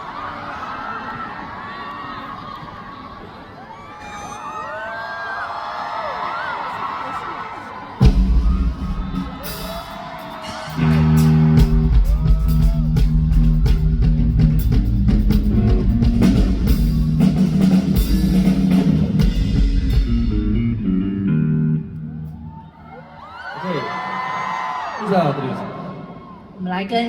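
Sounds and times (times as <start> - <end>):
rock band playing live: 8.0 - 21.8.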